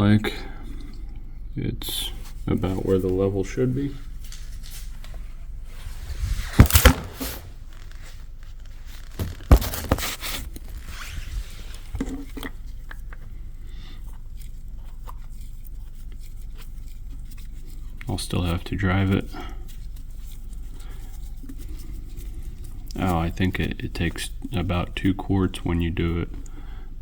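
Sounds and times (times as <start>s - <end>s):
parts knocking and scraping: 9.0s - 12.6s.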